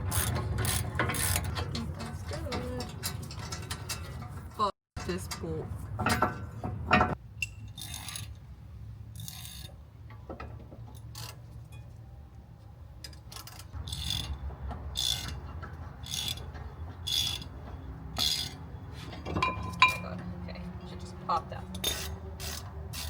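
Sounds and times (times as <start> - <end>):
ratchet wrench clicking: 9.2 - 9.7, 13.0 - 14.4, 15.0 - 17.5, 18.2 - 18.6, 21.8 - 23.0.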